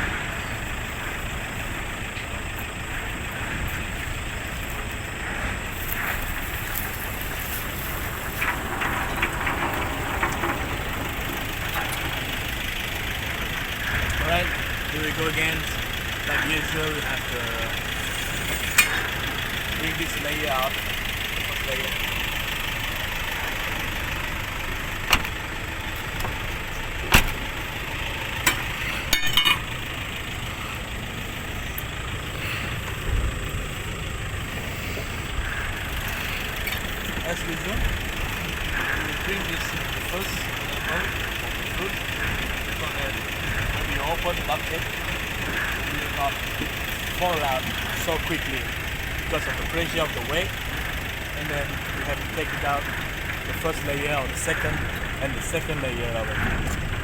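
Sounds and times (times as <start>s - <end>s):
vehicle engine idling: 0.0s - 57.0s
quick rattling: 6.5s - 15.8s.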